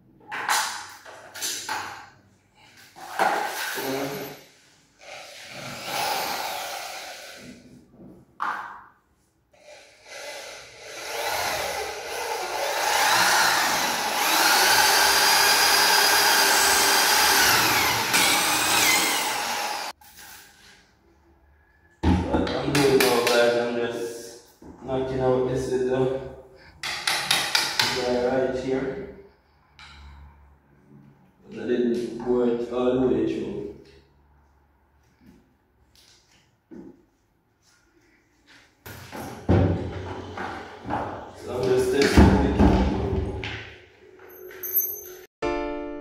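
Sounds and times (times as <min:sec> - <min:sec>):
power drill boring into wood: 0:05.0 - 0:07.5, 0:09.6 - 0:19.9.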